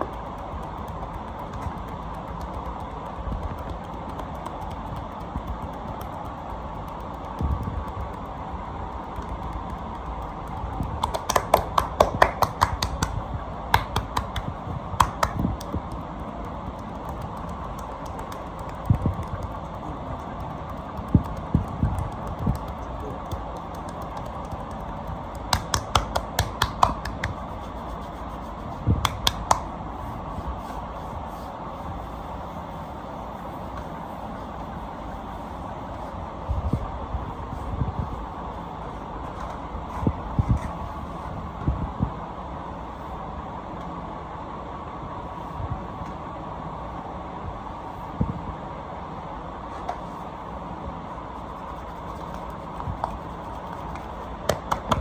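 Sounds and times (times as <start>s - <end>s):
sharp clicks and pops: 0.0s - 27.4s
steady background hum: 0.0s - 55.0s
hands thumping on back: 20.9s - 27.4s.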